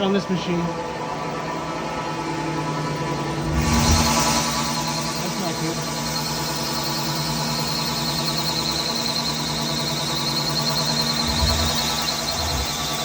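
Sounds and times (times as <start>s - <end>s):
machine cutting steel hum: 0.0s - 13.0s
high-pitched squeal from cutting: 3.5s - 13.0s.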